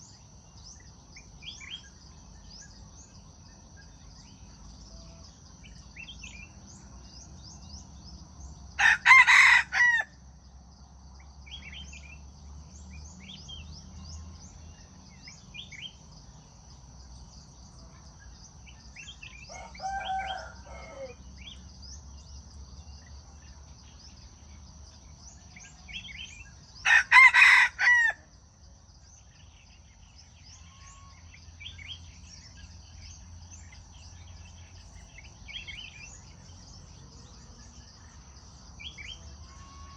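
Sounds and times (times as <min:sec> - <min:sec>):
high insect drone: 0:00.0 - 0:39.9
rooster crowing: 0:08.8 - 0:10.1, 0:19.5 - 0:21.2, 0:26.8 - 0:28.2
soft low rooster call: 0:19.5 - 0:21.2.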